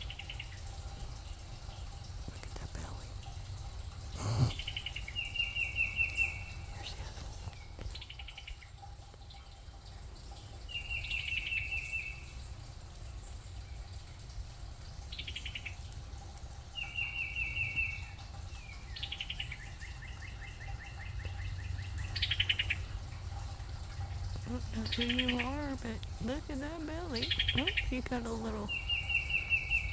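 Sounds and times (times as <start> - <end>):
songbirds trilling: 0.0 - 29.9
higher buzzy bird trills: 4.0 - 7.1, 16.7 - 29.9.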